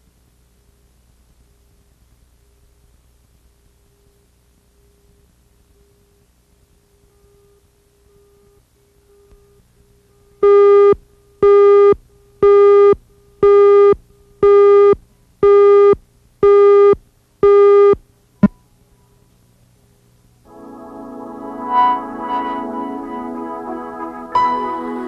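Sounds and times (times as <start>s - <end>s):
electronic beeps: 10.4s - 18.6s.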